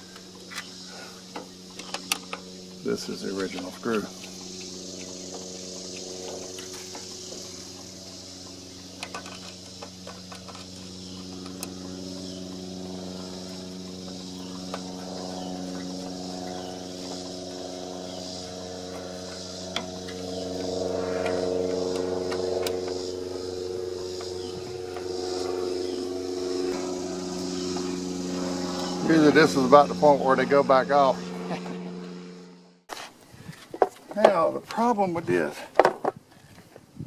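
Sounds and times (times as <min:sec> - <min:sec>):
engine idling hum: 0:00.0 - 0:32.9
parts clicking and tapping: 0:09.0 - 0:11.8.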